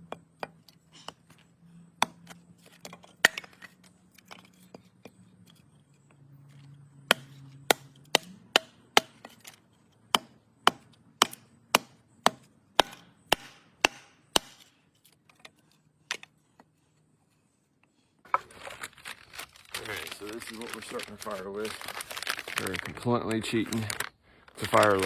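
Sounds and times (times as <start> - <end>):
wood being chopped: 0.0 - 1.4, 2.0 - 5.1, 7.0 - 15.5.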